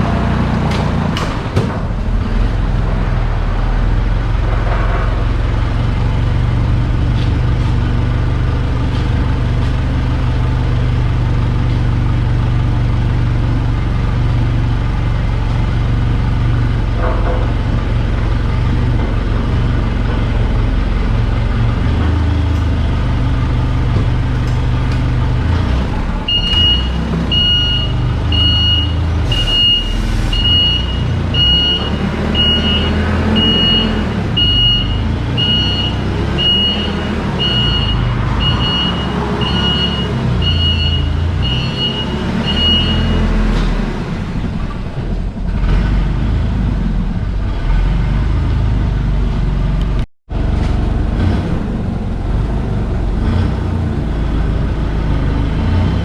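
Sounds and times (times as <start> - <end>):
heavy machine engine running: 0.0 - 56.0
reversing alarm beeping: 26.3 - 43.3.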